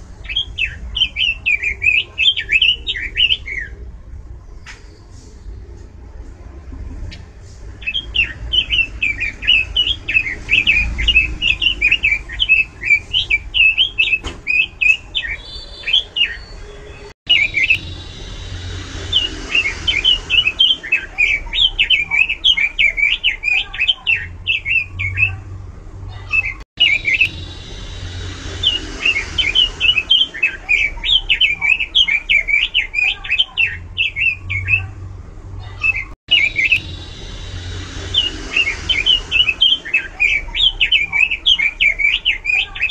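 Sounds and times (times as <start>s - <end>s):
bird warbling song: 0.2s - 5.8s, 7.8s - 25.4s, 26.3s - 34.9s, 35.8s - 42.9s
low steady hum: 26.8s - 31.7s, 33.8s - 41.5s.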